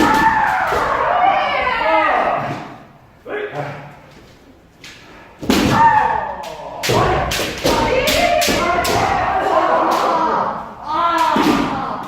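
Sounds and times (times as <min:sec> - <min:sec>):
bamboo swords striking: 0:05.4 - 0:10.5, 0:11.1 - 0:12.0.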